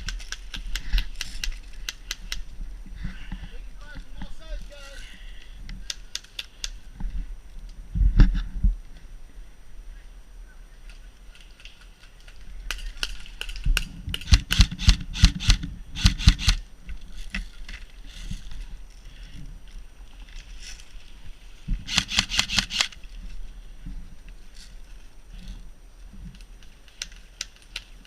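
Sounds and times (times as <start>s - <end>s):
airsoft rifle shots snapping: 13.4s - 16.6s, 21.9s - 23.0s.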